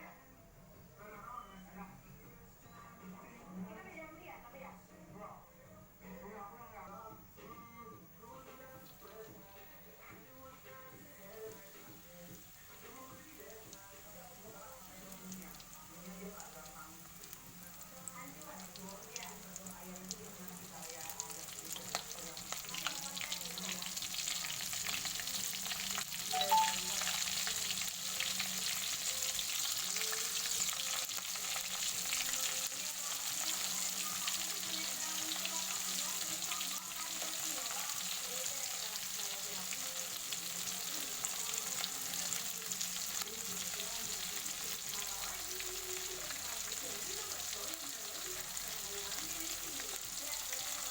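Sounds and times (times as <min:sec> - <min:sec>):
mushrooms frying in hot oil: 0:11.3 - 0:50.9.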